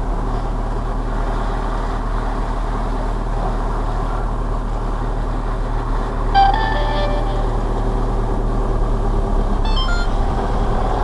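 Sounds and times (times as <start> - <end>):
van engine running: 0.0 - 11.0.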